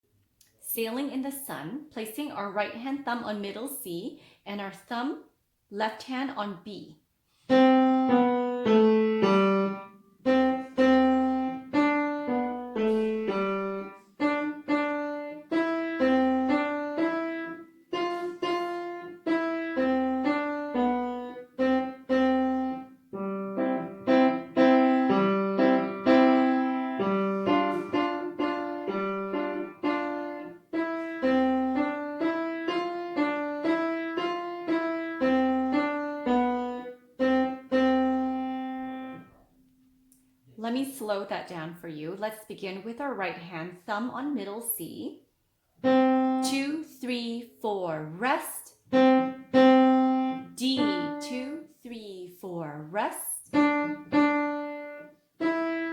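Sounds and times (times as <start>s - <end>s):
piano melody: 7.4s - 39.7s, 45.8s - 46.6s, 48.9s - 51.4s, 53.5s - 55.9s.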